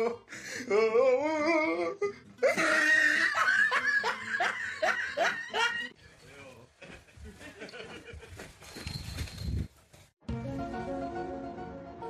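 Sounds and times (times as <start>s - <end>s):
person laughing hard: 2.4s - 5.9s.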